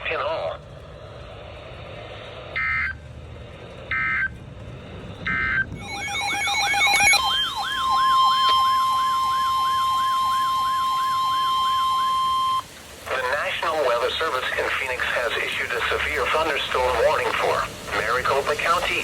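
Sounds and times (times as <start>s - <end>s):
siren-like wail: 1.5s - 14.1s
steady high alert tone: 5.3s - 13.4s
digital data screeches: 5.3s - 19.0s.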